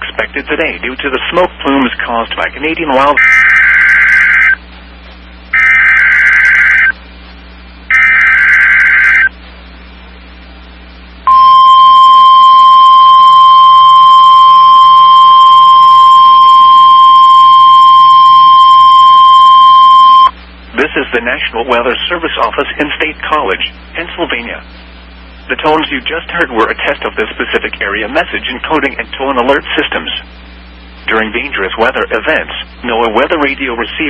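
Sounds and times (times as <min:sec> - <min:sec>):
digital data bursts: 0:02.9 - 0:04.6, 0:05.5 - 0:07.0, 0:07.9 - 0:09.3
loud steady alert tone: 0:03.2 - 0:04.6, 0:05.5 - 0:07.0, 0:07.9 - 0:09.3, 0:11.3 - 0:20.3.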